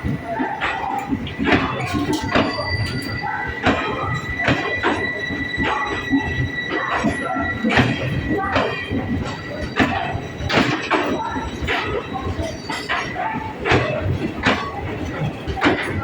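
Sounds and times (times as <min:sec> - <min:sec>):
train wheels knocking over rail joints: 0:00.0 - 0:16.0.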